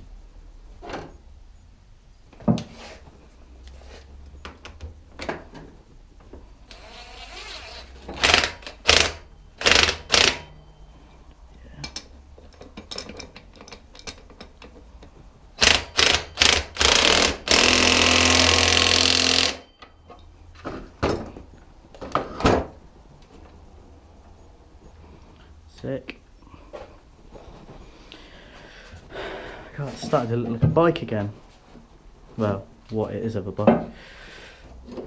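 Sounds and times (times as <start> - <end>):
impact wrench bursts: 6.7 - 10.6, 15.6 - 19.7
tools clicking and knocking: 8.0 - 10.6, 11.8 - 20.3.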